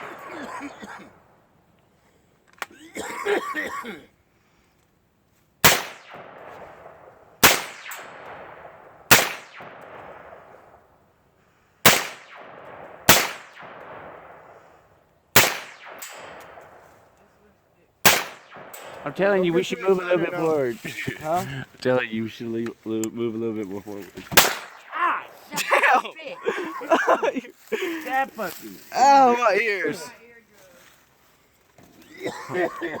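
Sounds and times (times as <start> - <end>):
rifle shots with rolling echo: 0.0 - 1.5, 5.6 - 11.1, 11.8 - 17.2, 18.0 - 20.6, 24.3 - 25.5.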